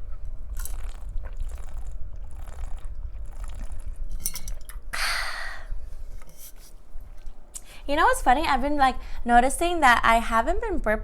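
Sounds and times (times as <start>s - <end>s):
noisy sip: 0.0s - 7.8s.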